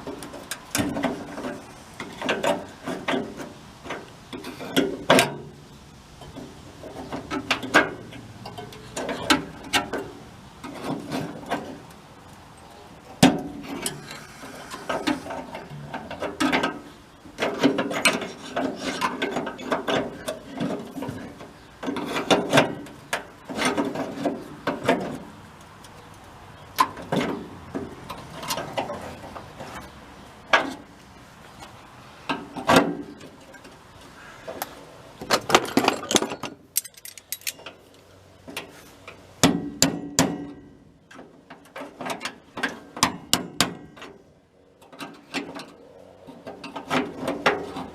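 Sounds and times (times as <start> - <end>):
metal scraping on metal: 13.5 - 20.4.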